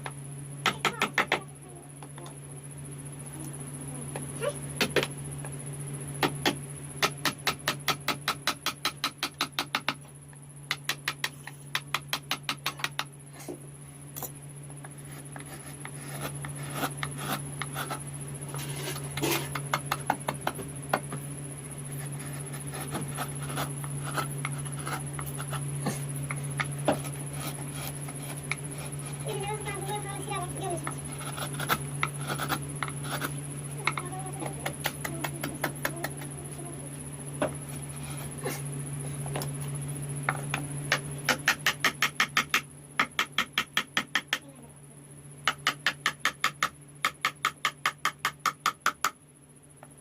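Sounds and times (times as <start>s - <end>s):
steady low hum: 0.0s - 50.0s
chisel scraping wood: 14.9s - 19.6s, 21.9s - 26.0s, 26.6s - 29.3s, 30.9s - 33.4s.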